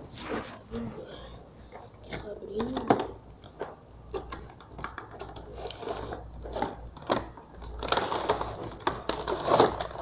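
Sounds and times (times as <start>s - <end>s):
packaging being torn open: 5.5s - 10.0s.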